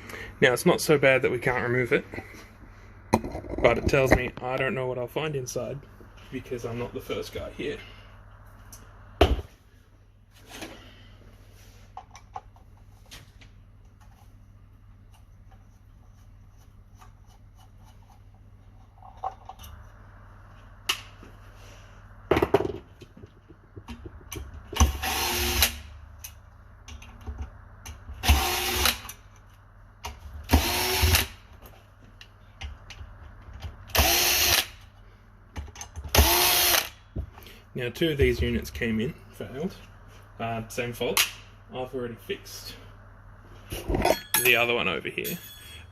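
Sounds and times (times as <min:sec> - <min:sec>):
electric drill-driver whirring: 0:24.8 - 0:25.8, 0:28.2 - 0:29.1, 0:30.5 - 0:31.4, 0:33.9 - 0:34.7, 0:36.1 - 0:37.0.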